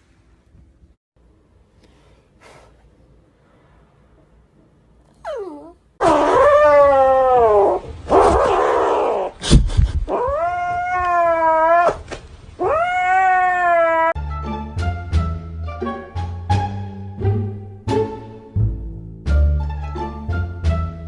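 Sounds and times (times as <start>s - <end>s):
cat yowling: 5.2s - 7.8s, 12.6s - 14.2s
music: 14.2s - 21.0s.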